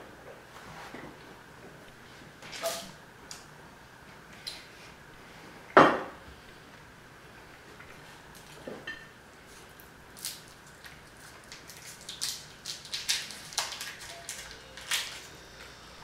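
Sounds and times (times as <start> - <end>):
candy wrappers crinkling: 10.1 - 15.8.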